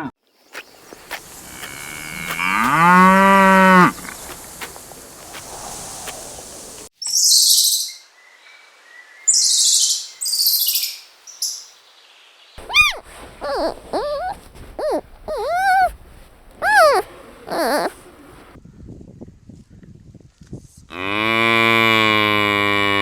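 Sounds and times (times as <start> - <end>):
bird calls: 0.5 - 6.9, 12.6 - 18.5.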